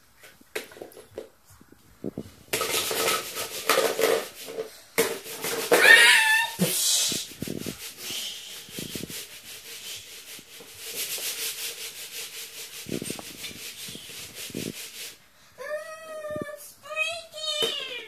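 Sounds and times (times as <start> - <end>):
plastic bricks scraping rhythmically: 2.5 - 5.8.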